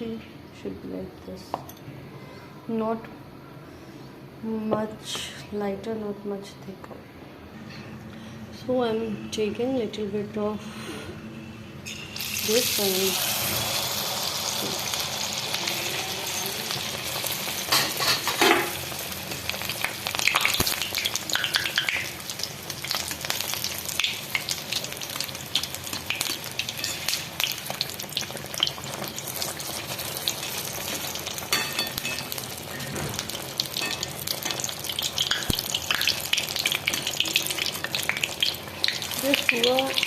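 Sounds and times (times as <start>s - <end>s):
batter sizzling in hot oil: 11.9s - 40.0s.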